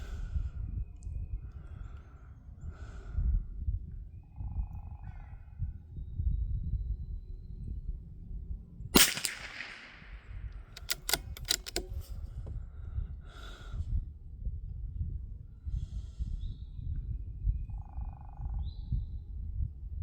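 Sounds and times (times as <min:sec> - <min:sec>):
rifle shot with echo: 0:09.0 - 0:12.1
metallic bolt clicks: 0:10.7 - 0:12.2.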